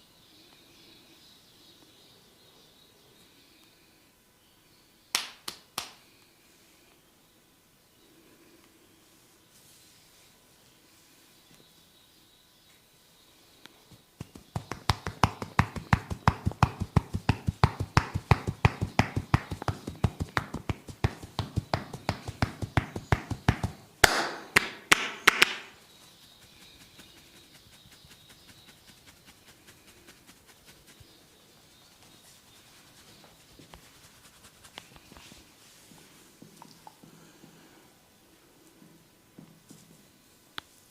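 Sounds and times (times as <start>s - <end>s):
hands tapping and slapping skin: 5.2s - 6.0s, 14.2s - 25.8s.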